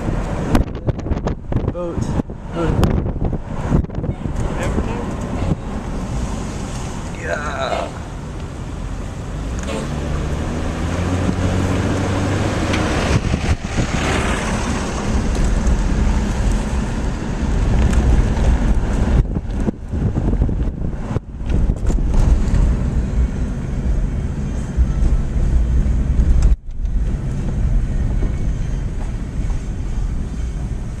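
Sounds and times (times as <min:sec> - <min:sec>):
wind buffeting microphone: 0:00.0 - 0:07.2, 0:10.2 - 0:31.0.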